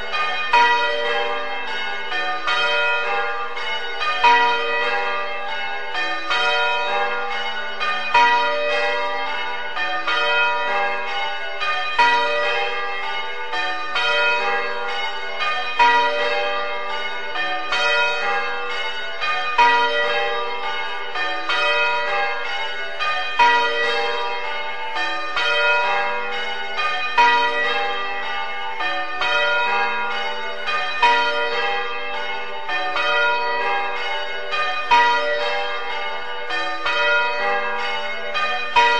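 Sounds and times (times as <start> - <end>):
church bells ringing: 0.0 - 38.9.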